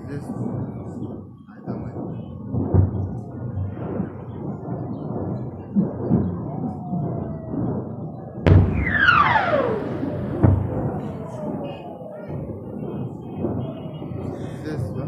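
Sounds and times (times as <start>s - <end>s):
explosions rumbling: 0.0s - 15.0s
dull thuds: 8.5s - 11.2s
sharp blast: 8.5s - 11.2s
falling whistle: 8.5s - 12.1s.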